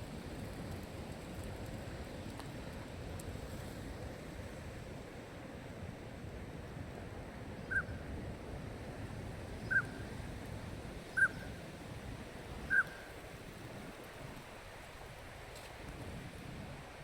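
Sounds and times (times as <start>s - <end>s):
duck whistled calls: 7.7s - 7.9s, 9.6s - 10.0s, 11.2s - 11.5s, 12.7s - 13.1s.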